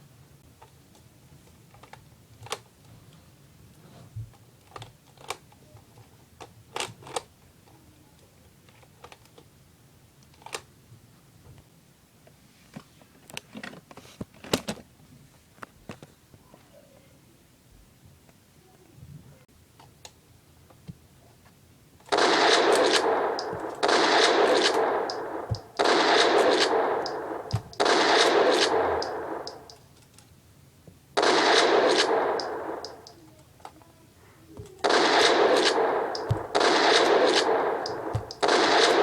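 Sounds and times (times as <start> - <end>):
shotgun blasts: 22.1 - 29.8, 31.2 - 33.1, 34.8 - 39.0.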